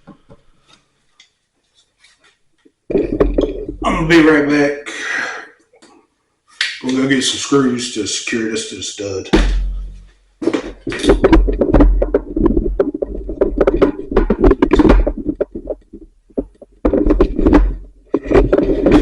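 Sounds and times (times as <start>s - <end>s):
thumps and knocks: 0.0s - 0.5s, 2.9s - 4.2s, 9.3s - 19.0s
low rumbling handling noise: 2.9s - 4.4s, 9.3s - 19.0s.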